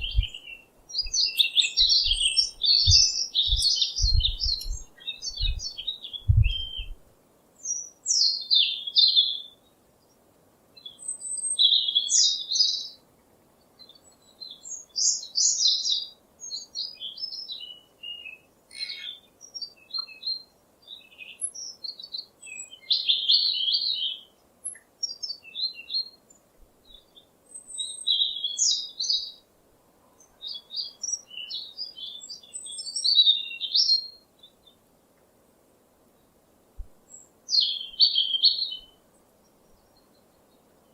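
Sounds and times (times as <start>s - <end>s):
songbirds chirping and singing: 0.0s - 7.0s, 10.8s - 13.0s, 13.6s - 29.5s, 30.1s - 35.2s, 37.1s - 40.9s.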